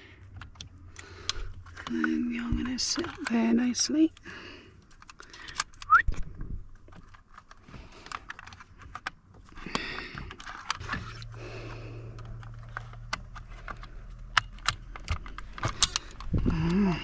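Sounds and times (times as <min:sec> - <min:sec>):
low hum from car: 0:00.0 - 0:05.0, 0:08.8 - 0:17.0
car keys jangling in ignition: 0:12.2 - 0:16.9.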